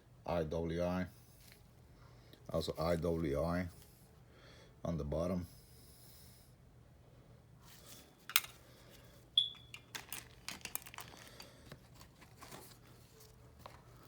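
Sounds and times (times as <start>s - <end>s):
plastic and metal parts clicking: 8.3s - 8.6s, 9.7s - 12.7s
plastic wrapping crinkling: 9.5s - 14.0s.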